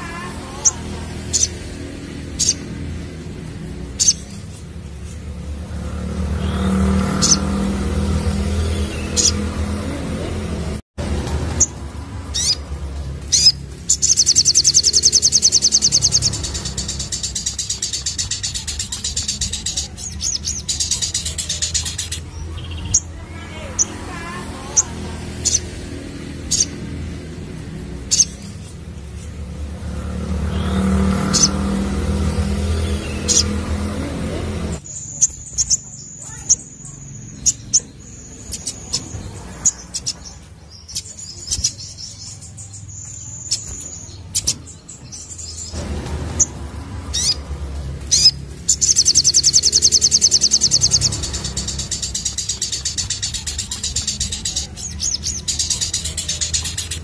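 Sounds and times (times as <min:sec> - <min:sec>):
bird chirps: 0:00.0 - 0:09.9, 0:12.3 - 0:24.1, 0:30.0 - 0:57.0
vehicle engine running: 0:45.5 - 0:57.0.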